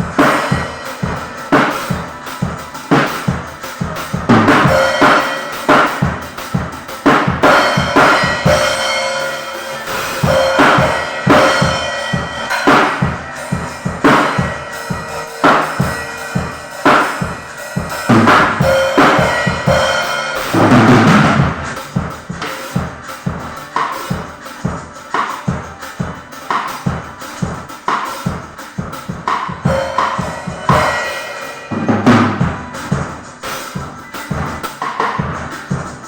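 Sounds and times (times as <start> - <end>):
held pitched instrument notes: 0.0 - 27.8
drum kit steady beat: 0.0 - 36.0.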